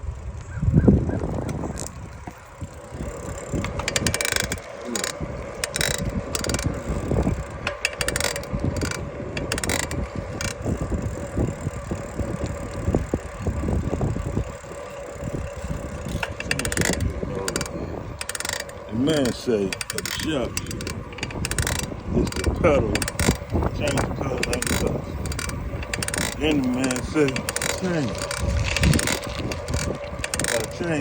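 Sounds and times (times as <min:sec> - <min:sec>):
bicycle mechanical clicking: 0:00.0 - 0:31.0.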